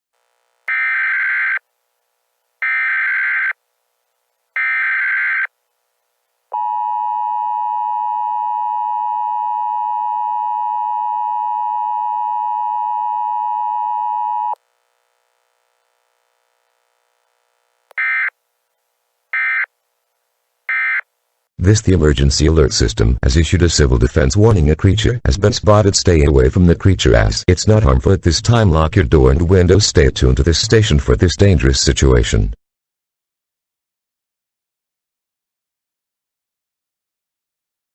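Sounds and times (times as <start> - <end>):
steady attention tone: 6.5 - 14.6.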